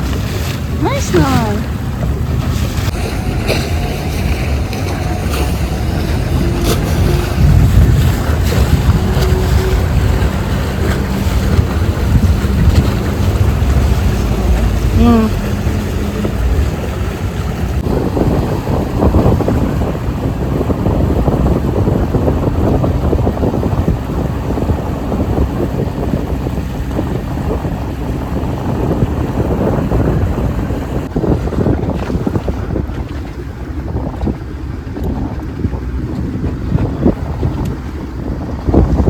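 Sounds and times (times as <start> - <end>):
motorboat rushing on water: 0.0 - 39.0
wind buffeting microphone: 0.0 - 39.0.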